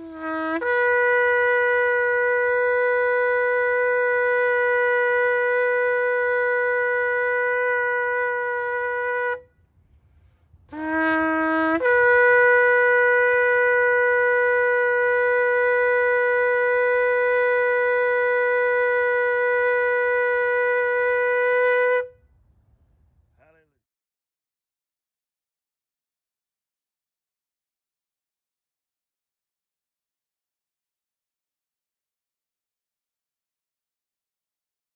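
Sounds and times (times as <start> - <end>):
shofar blasts: 0.0 - 22.3.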